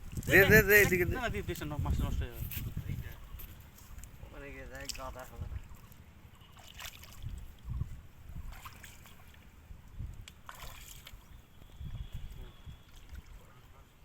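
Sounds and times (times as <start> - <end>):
water sloshing and splashing: 3.6 - 14.0.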